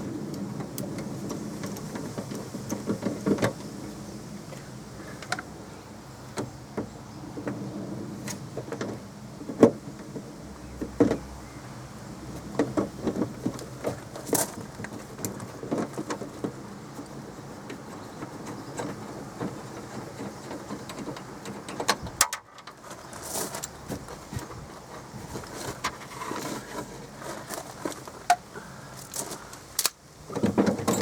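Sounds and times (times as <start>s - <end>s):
clicks and knocks of plastic panel: 29.2s - 31.0s.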